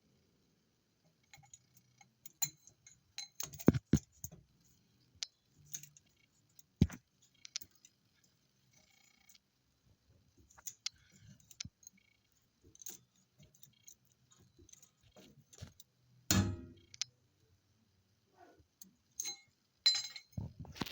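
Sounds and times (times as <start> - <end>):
light clicks and rattles: 1.1 - 17.1
loud metal clunk: 16.3 - 16.8.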